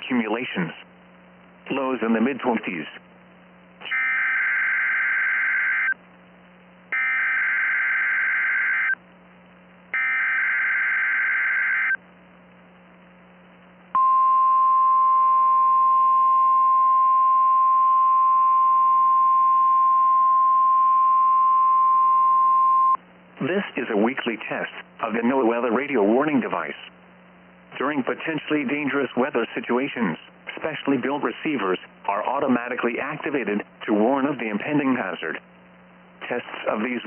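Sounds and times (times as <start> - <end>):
steady warning alarm tone: 3.9 - 6.0, 6.9 - 9.0, 10.0 - 12.0.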